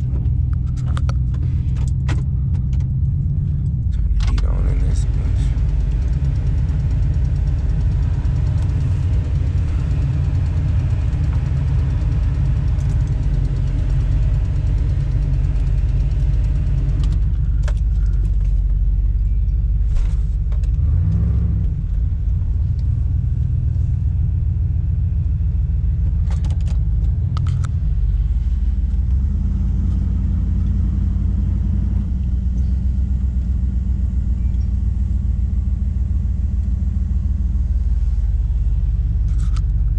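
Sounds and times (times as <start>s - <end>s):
short clunks and clicks: 0.0s - 4.5s, 26.1s - 27.8s
truck engine rumbling: 0.0s - 39.9s.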